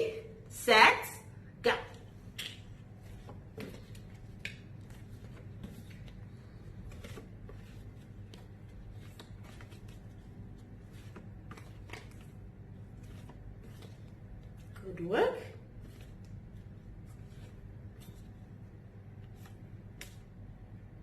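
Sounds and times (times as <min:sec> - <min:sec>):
low steady hum: 0:00.0 - 0:21.0
flashcards clicking and rustling: 0:02.3 - 0:14.6.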